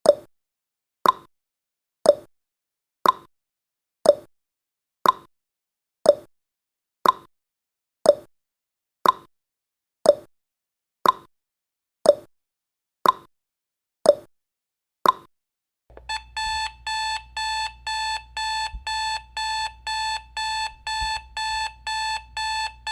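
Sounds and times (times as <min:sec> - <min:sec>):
alarm clock beeping: 0:15.9 - 0:22.9
timer ticking: 0:15.9 - 0:22.9.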